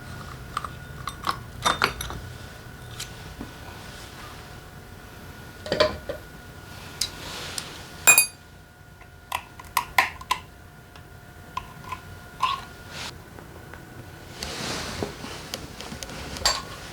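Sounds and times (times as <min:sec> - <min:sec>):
metal tools clinking and knocking: 0:08.1 - 0:08.4
ringing metallic clink: 0:08.1 - 0:08.4.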